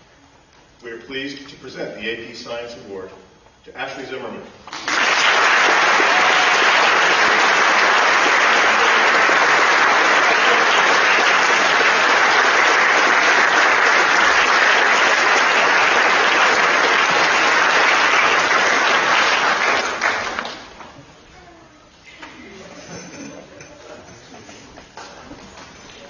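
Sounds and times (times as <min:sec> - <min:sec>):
audience applauding: 0:04.7 - 0:20.8.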